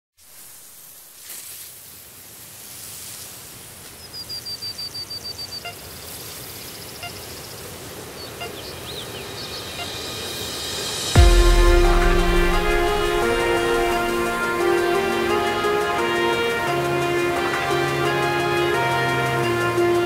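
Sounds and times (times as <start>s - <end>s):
waterfall rushing: 7.3s - 20.0s.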